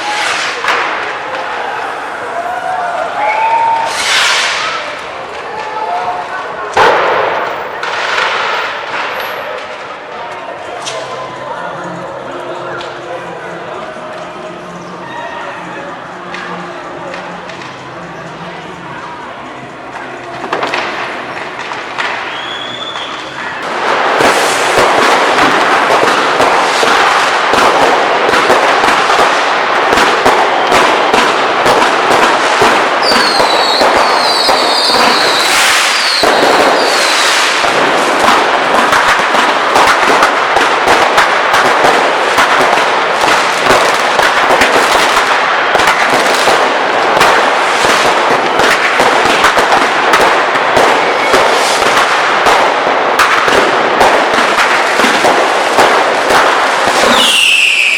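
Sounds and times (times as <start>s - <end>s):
fireworks and firecrackers crackling: 0.0s - 57.9s
firework whistles: 3.0s - 6.4s, 20.4s - 29.3s, 30.0s - 39.2s, 54.7s - 57.9s.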